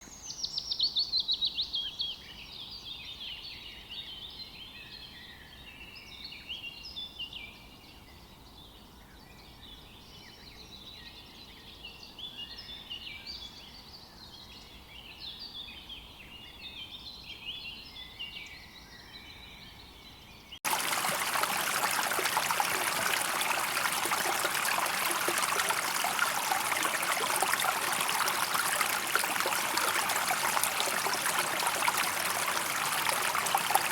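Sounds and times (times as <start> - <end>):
songbirds chirping: 17.7 - 33.9
stream flowing: 20.6 - 33.9.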